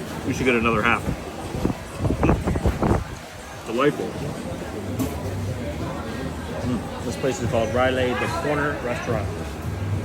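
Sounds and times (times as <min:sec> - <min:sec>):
wind buffeting microphone: 0:00.6 - 0:03.6.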